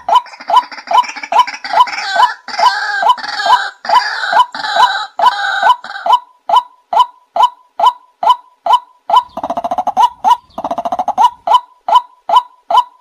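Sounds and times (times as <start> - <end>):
waterhen sharp calls: 0.0 - 13.0
croaking chorus: 9.1 - 13.0.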